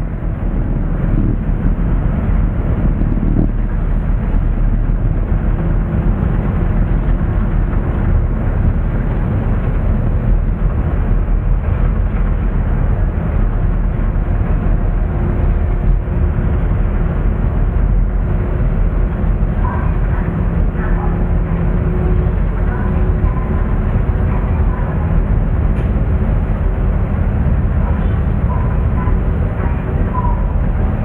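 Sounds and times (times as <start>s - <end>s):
faint ship hum: 0.0s - 31.0s
strong wind buffeting microphone: 0.0s - 31.0s.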